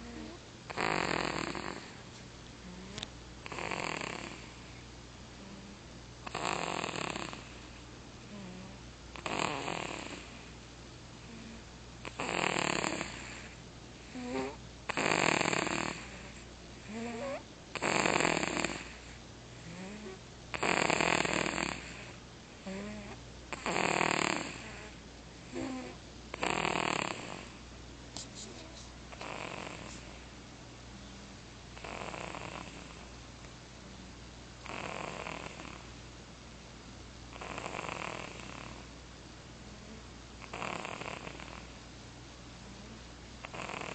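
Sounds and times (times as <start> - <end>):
baby snoring: 0.0 - 2.0, 2.6 - 4.7, 5.4 - 7.6, 8.3 - 10.5, 11.3 - 27.6, 28.6 - 30.2, 31.8 - 33.1, 34.6 - 35.8, 37.3 - 38.9, 40.4 - 41.7, 43.4 - 43.9.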